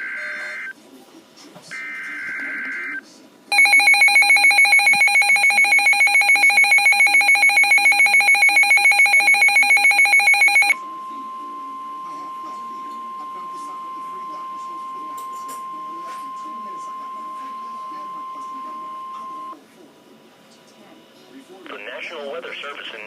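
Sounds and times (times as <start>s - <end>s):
harsh pulsing attention signal: 1.8s - 19.6s.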